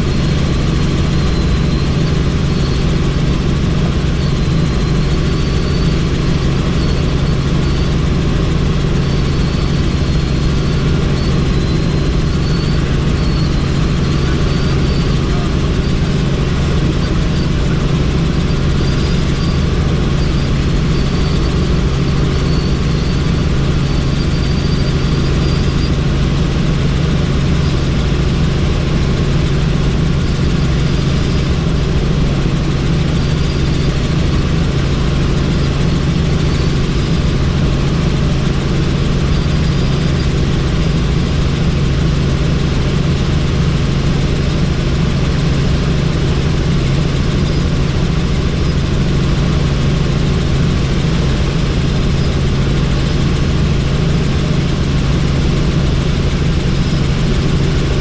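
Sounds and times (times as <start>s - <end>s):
helicopter engine and rotor drone: 0.0s - 58.0s.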